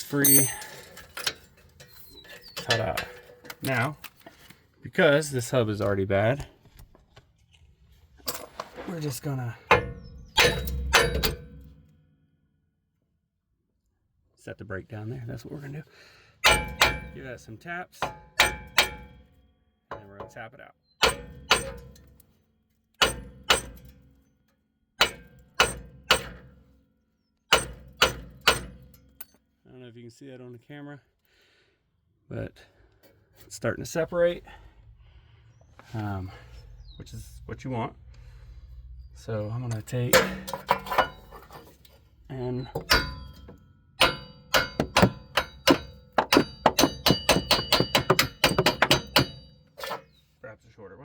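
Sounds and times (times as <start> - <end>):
hammer striking metal: 0.0 - 0.8, 9.7 - 11.9, 16.4 - 17.3, 18.0 - 19.2, 21.0 - 22.1, 23.0 - 24.0, 25.0 - 26.5, 27.5 - 29.3, 40.1 - 41.6, 42.6 - 50.1.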